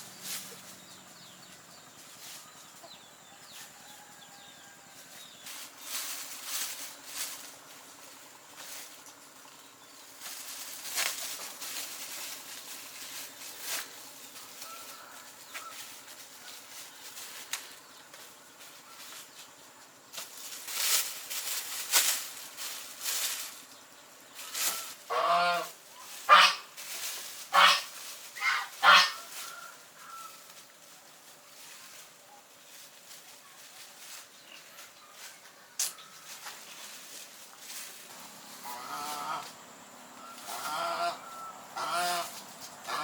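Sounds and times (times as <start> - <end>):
rustling and scraping: 0.0 - 43.0
fowl honking calls: 24.6 - 26.8, 27.4 - 30.4, 38.2 - 43.0.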